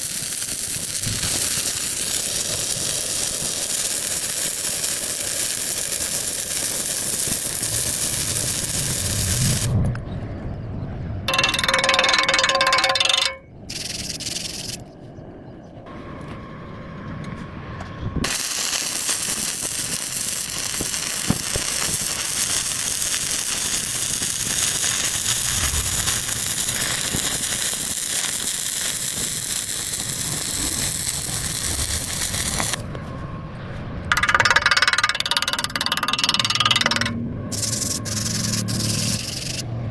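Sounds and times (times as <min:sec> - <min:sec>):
arc welding crackling hiss: 0:00.0 - 0:09.8, 0:13.7 - 0:14.8, 0:18.2 - 0:32.8, 0:37.5 - 0:39.6
metalworking noise bursts: 0:11.3 - 0:14.8, 0:18.2 - 0:32.8, 0:34.1 - 0:39.6.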